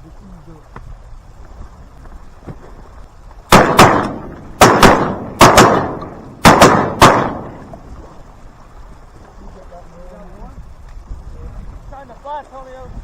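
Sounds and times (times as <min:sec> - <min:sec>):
shotgun shots: 0:03.5 - 0:07.6.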